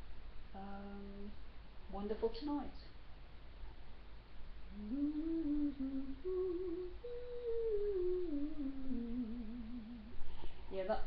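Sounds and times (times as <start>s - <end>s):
woman humming a slow tune: 0.6s - 1.4s, 4.7s - 10.2s.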